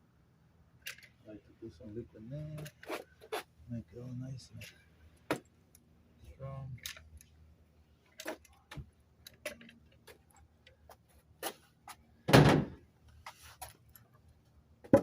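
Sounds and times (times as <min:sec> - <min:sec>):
tools clicking and knocking: 0:00.8 - 0:01.2, 0:08.1 - 0:10.8
loud thump: 0:12.3 - 0:12.8.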